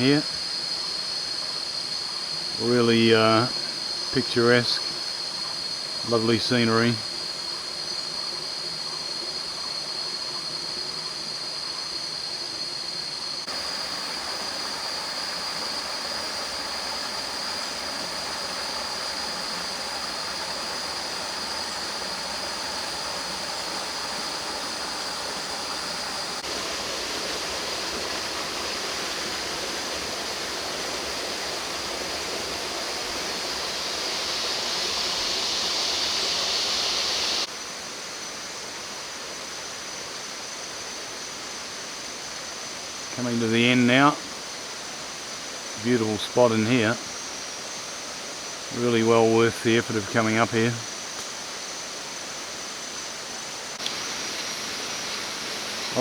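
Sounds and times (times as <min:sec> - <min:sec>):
high-pitched insect drone: 0:00.0 - 0:56.0
stream water rushing: 0:13.4 - 0:38.0, 0:41.2 - 0:56.0.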